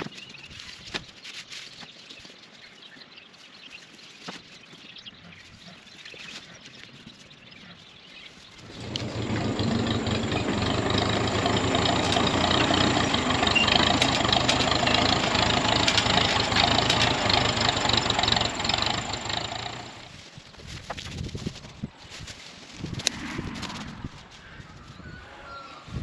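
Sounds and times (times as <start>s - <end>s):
tractor engine running: 8.5s - 20.2s.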